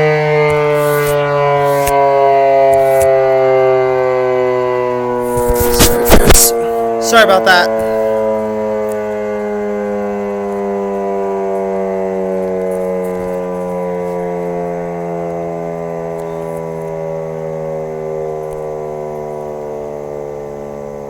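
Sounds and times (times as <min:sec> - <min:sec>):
siren sliding downward: 0:00.0 - 0:21.0.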